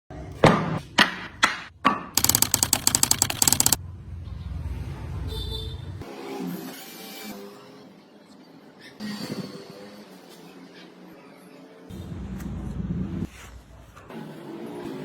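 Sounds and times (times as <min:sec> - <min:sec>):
quick run of clicks: 0:02.2 - 0:03.8.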